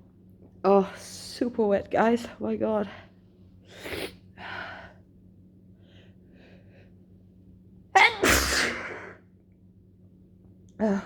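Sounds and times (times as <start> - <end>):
woman sneezing: 8.0 - 9.2.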